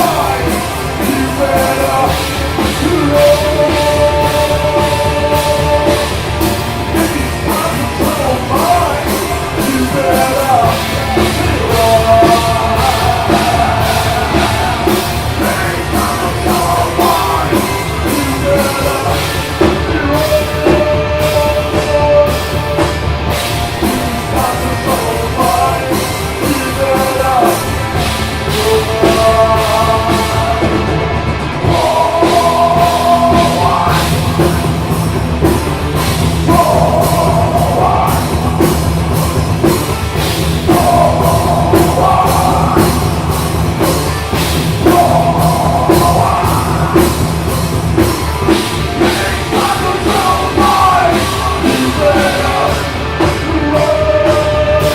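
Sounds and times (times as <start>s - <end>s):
driving drum kit: 0.0s - 54.9s
heavy rock band playing: 0.0s - 54.9s
loud sung vocals: 0.0s - 54.9s.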